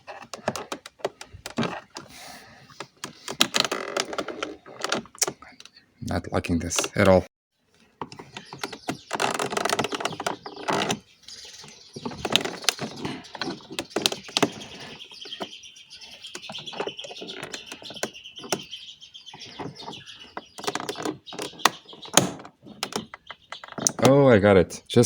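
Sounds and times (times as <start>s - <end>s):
high chirping: 8.2s - 24.1s
plastic trim being pried loose: 20.6s - 24.1s.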